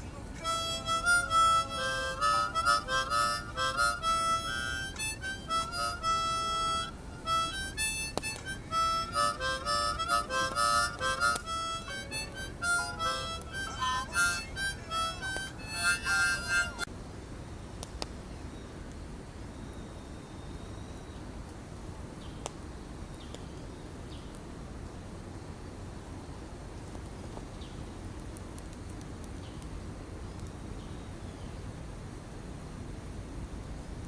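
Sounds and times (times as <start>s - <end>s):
harmonica melody: 0.4s - 16.9s.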